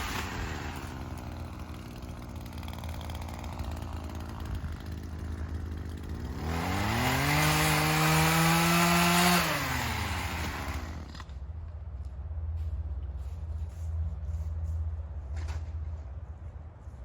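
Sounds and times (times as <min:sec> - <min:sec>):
two-stroke saw engine revving: 0:00.0 - 0:11.3.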